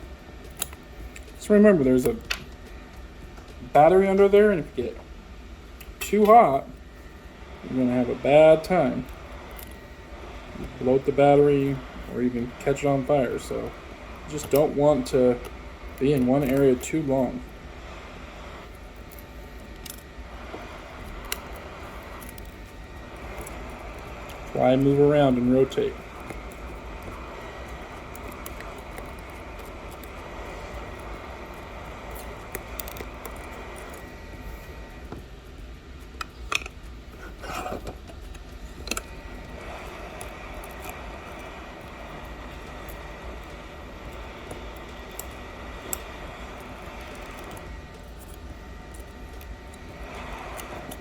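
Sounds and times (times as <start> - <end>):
hot air station hissing: 0.0 - 51.0.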